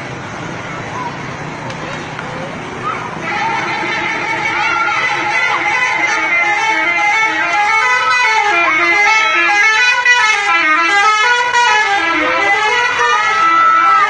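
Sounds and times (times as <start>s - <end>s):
bus horn playing a tune: 3.2s - 14.0s.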